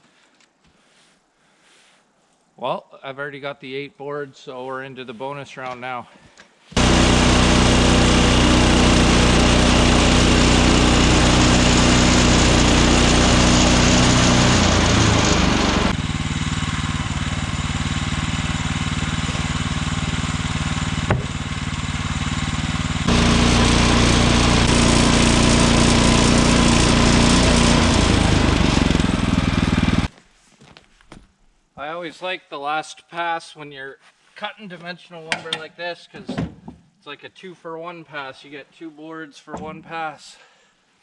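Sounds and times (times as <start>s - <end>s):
band sawmill engine under load: 6.8s - 30.1s.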